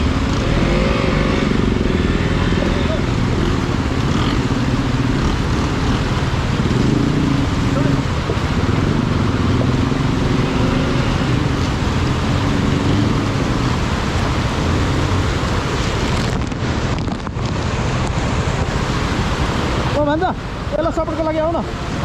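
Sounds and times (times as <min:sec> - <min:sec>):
motorcycle engine running: 0:00.0 - 0:15.9
river rushing: 0:00.0 - 0:22.0.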